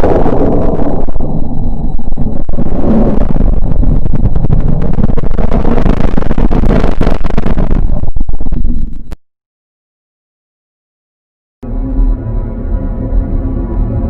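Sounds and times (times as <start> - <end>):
dense rumbling roar with crackles: 0.0 - 9.2, 11.6 - 14.0.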